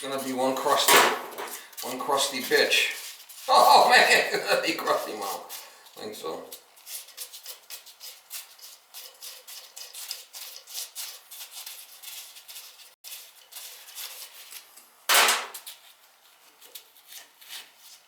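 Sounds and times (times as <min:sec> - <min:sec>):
loud metal clank: 0:00.9 - 0:01.6, 0:15.1 - 0:15.6.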